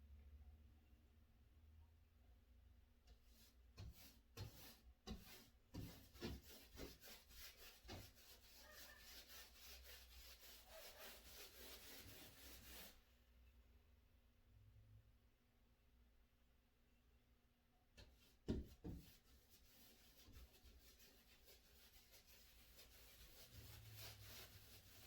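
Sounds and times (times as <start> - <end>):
paintbrush strokes on wall: 3.1 - 13.2, 18.0 - 25.0.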